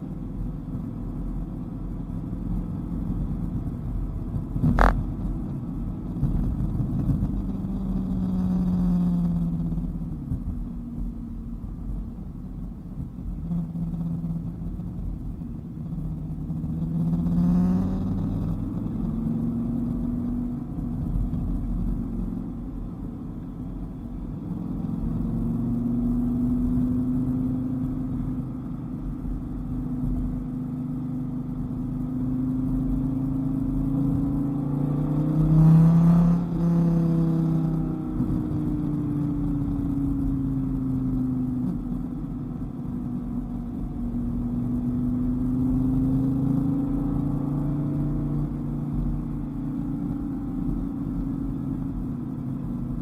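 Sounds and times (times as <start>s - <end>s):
sports car engine revving: 13.2s - 53.0s.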